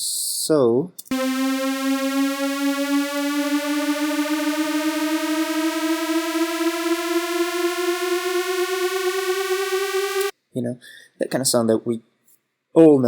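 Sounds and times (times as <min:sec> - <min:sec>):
synth riser gliding upward: 0:01.1 - 0:10.3.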